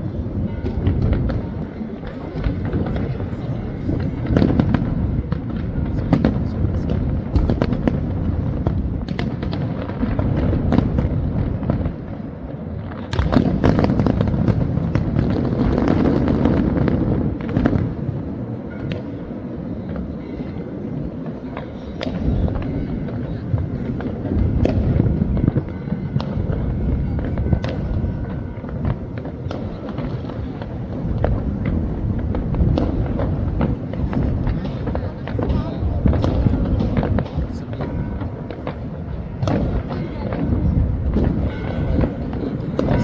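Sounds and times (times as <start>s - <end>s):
fireworks bangs and booms: 0.0s - 43.0s
rolling rumble: 22.0s - 43.0s.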